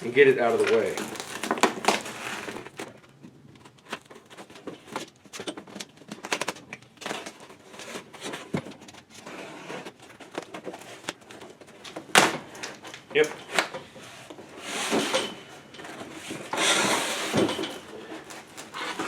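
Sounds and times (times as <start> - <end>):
cardboard box scraping and rustling: 0.4 - 3.0, 7.0 - 11.0, 14.0 - 19.0.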